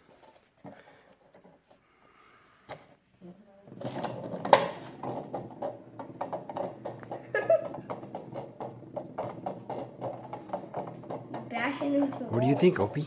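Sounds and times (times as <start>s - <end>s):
clicking and clattering: 3.8s - 13.0s.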